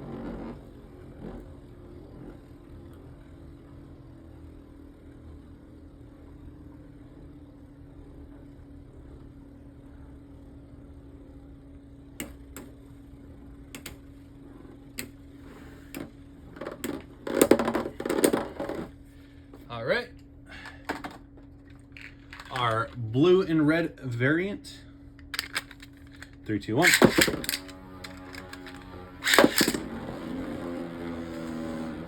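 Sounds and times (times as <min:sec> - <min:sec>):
spinning tops whirring: 0:15.0 - 0:19.0, 0:20.8 - 0:23.0, 0:25.2 - 0:32.0
plastic clatter: 0:16.6 - 0:18.9, 0:20.8 - 0:22.8, 0:25.3 - 0:29.9.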